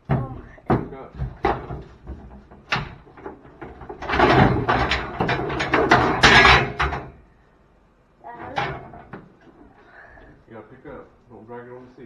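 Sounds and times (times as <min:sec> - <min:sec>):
metal tailgate scraping and clattering: 0:01.3 - 0:07.2, 0:08.3 - 0:09.6.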